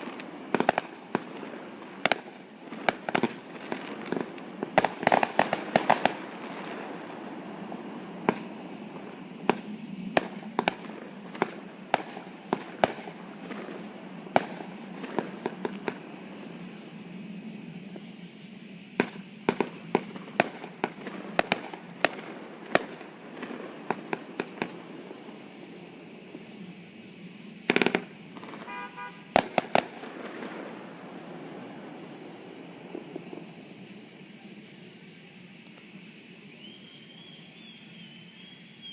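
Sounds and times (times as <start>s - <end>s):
fireworks bangs and pops: 0.0s - 16.8s, 19.0s - 25.4s, 27.7s - 30.8s
crickets chirring: 0.0s - 38.9s.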